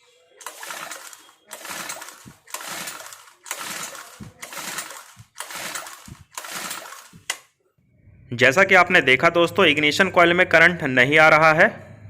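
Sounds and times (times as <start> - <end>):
engine cranking without firing: 0.4 - 7.5
recoil starter pulls: 0.4 - 7.5.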